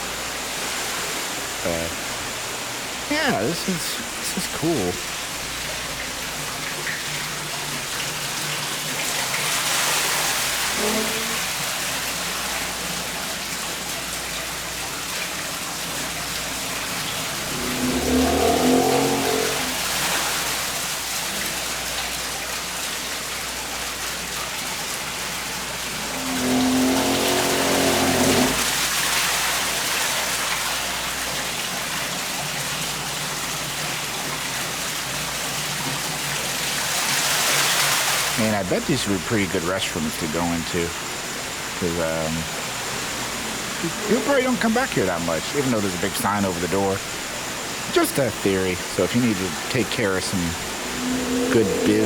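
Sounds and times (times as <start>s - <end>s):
water splashing from water wheel: 0.0s - 52.0s
brief pitched sounds: 49.9s - 52.0s.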